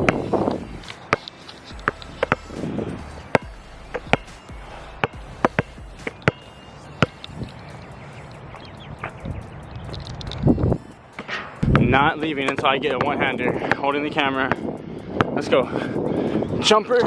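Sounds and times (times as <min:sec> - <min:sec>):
basketball bouncing: 0:00.0 - 0:07.2.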